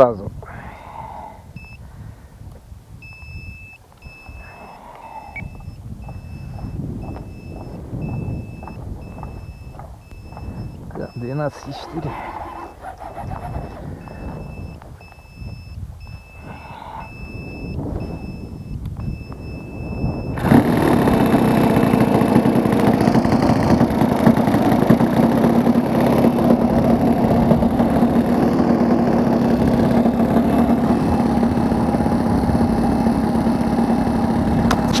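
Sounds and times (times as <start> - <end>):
high electronic beeps: 3.0 - 11.8, 12.4 - 20.4
model aircraft engine running: 11.8 - 14.2, 20.4 - 35.0.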